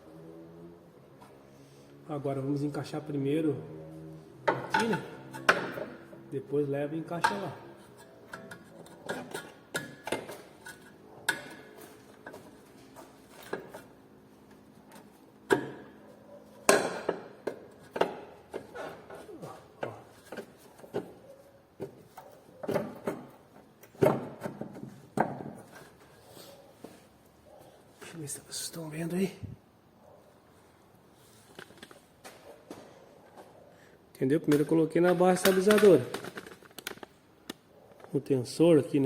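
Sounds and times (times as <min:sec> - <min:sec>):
metal clanks and knocks: 0:04.4 - 0:06.1, 0:07.2 - 0:12.6.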